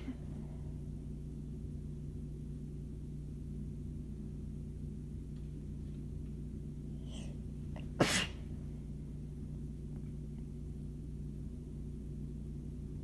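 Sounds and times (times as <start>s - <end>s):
person sneezing: 7.0s - 8.5s.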